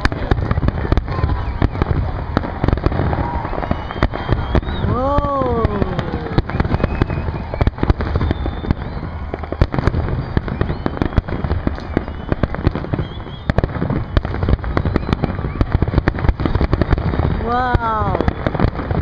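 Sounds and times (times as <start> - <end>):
fireworks crackling: 0.0 - 19.0.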